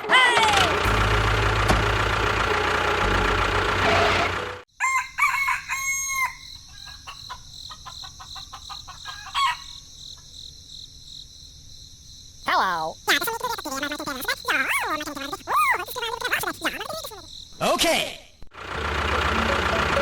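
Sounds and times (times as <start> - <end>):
machine engine running: 0.2 - 4.6, 18.6 - 20.0
rooster crowing: 4.8 - 7.4, 9.0 - 9.8
chickens clucking: 6.7 - 9.6, 12.5 - 17.3.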